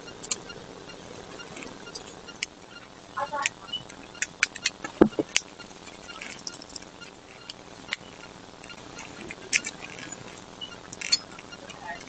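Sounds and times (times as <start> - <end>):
sharp clicks and taps: 4.2 - 5.5.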